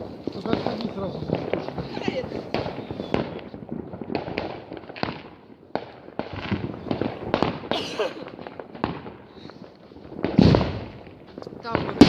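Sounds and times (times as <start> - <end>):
fireworks bangs and cracks: 0.0 - 12.0.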